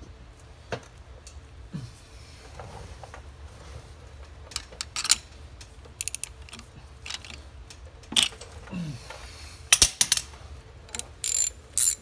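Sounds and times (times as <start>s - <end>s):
metallic clicks and clanks of tools: 4.5s - 8.6s, 9.7s - 12.0s.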